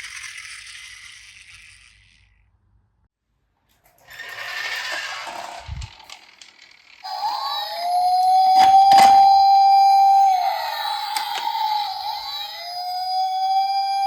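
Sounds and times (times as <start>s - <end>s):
rolling rattle: 0.0s - 2.5s, 3.7s - 7.3s
toy police siren: 7.0s - 14.0s.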